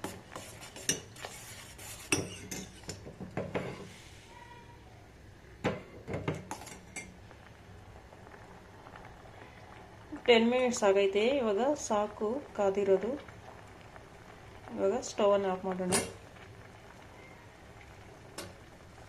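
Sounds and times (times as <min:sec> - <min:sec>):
metal spoon clinking and scraping: 0:00.4 - 0:03.0.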